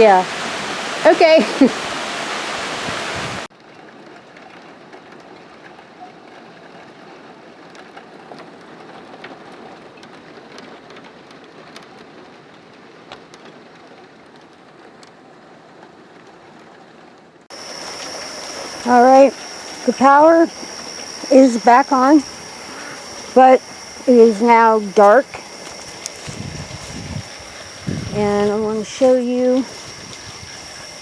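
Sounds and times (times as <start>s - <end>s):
heavy rain patter: 0.0s - 31.0s
sharp drip ticks: 17.5s - 26.2s, 28.9s - 31.0s.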